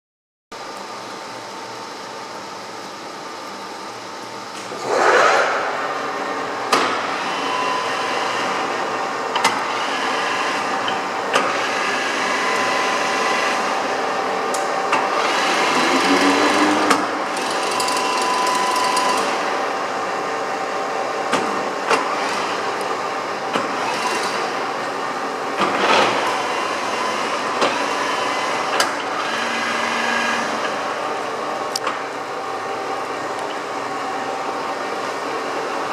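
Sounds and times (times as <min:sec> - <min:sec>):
lathe gears whining: 0:14.8 - 0:19.6.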